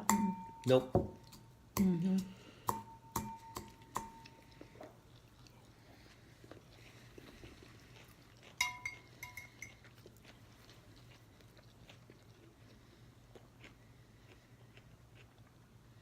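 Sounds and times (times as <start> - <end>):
faint chewing: 3.7 - 16.0
metal utensil clinking on dish: 8.6 - 9.8.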